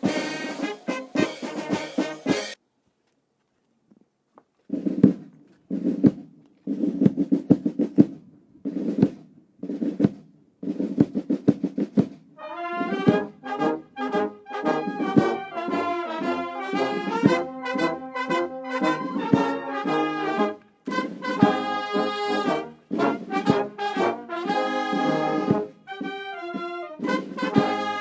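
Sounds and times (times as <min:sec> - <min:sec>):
brass band melody: 0:00.0 - 0:02.6, 0:12.4 - 0:28.0
drum strokes: 0:00.0 - 0:02.6, 0:04.7 - 0:28.0.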